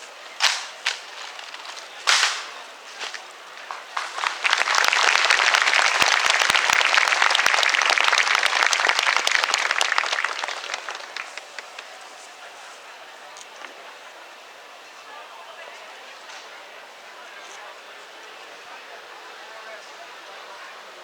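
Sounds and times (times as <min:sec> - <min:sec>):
sharp crack: 0:00.4 - 0:06.7
crowd applauding: 0:03.7 - 0:12.2.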